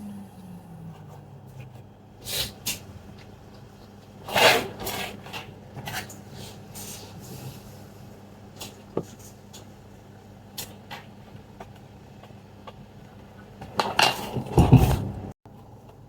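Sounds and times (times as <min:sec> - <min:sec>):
faint low hum: 0:00.0 - 0:09.4.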